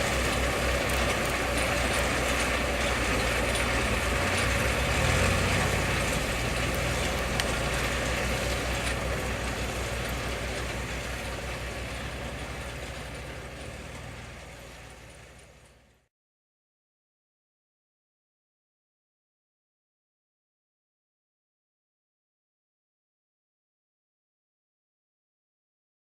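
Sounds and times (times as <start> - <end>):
tractor diesel engine running: 0.0 - 16.1.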